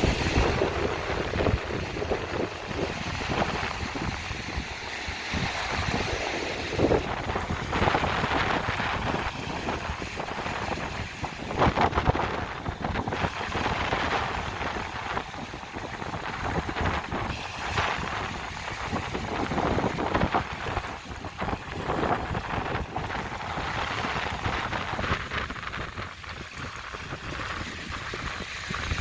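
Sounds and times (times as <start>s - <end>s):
waves breaking on beach: 0.0s - 29.0s
wind buffeting microphone: 0.0s - 29.0s.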